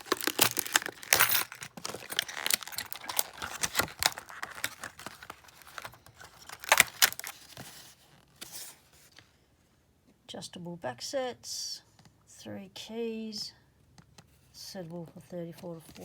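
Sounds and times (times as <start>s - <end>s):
keys and metal parts rattling: 0.0s - 5.9s
plastic packaging crackling: 0.0s - 8.0s.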